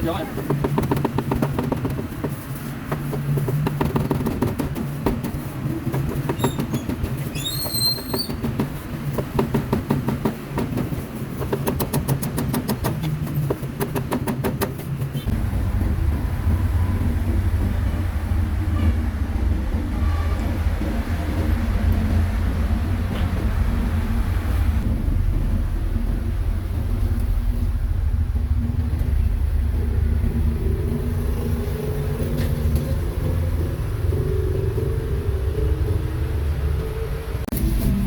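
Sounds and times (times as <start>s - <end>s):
street noise: 0.0s - 38.0s
low engine rumble: 12.8s - 38.0s.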